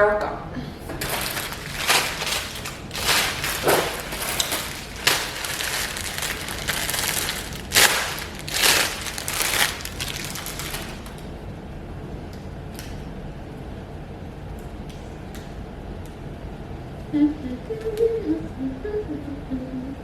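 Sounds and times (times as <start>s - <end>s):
hair rustling and crinkling: 0.8s - 11.4s.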